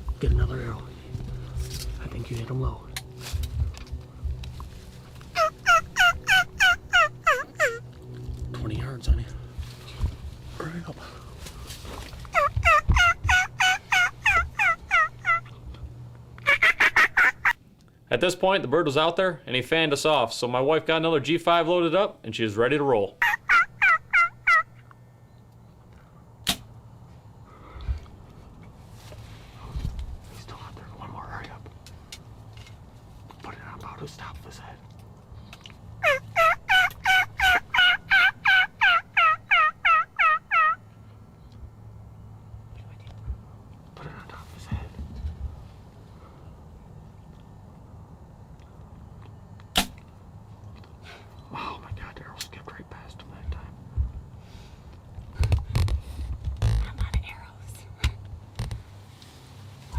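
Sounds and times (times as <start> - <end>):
wild turkey calling: 5.2 - 8.0, 12.3 - 15.8, 16.4 - 17.6, 23.2 - 25.4, 36.0 - 41.0.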